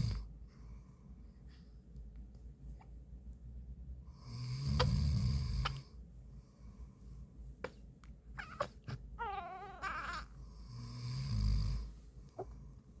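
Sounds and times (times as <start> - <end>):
infant cooing: 8.4 - 10.4
man snoring: 10.7 - 11.8.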